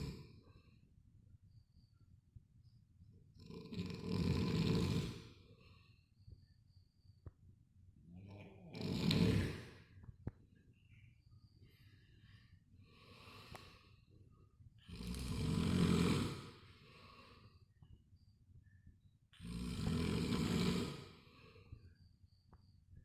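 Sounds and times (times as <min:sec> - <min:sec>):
person snoring heavily: 0:03.4 - 0:05.3, 0:08.2 - 0:09.8, 0:14.9 - 0:16.6, 0:19.4 - 0:21.3
faint breathing: 0:04.9 - 0:06.5, 0:10.8 - 0:17.9, 0:19.6 - 0:22.4.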